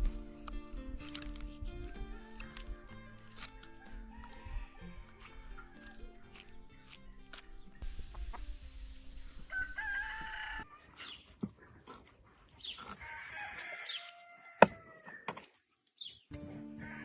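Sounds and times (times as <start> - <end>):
rooster crowing: 2.1 - 6.3, 9.4 - 10.8, 13.0 - 15.2.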